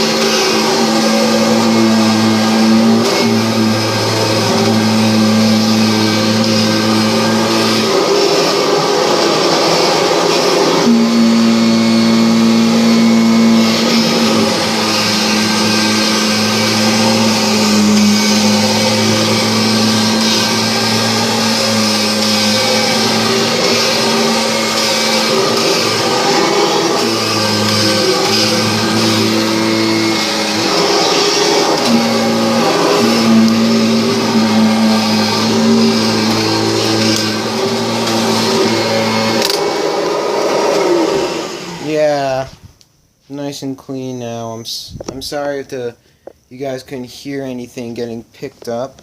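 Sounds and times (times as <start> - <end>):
upright vacuum cleaner running: 0.0 - 42.4.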